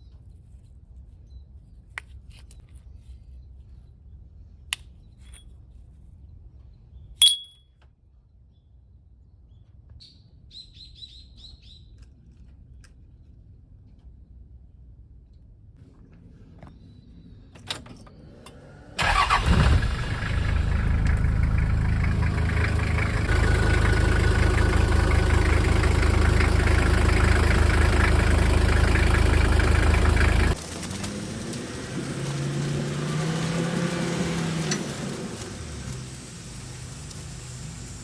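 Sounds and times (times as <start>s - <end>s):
engine starting and running: 17.6s - 38.0s
ignition click: 19.0s - 21.4s.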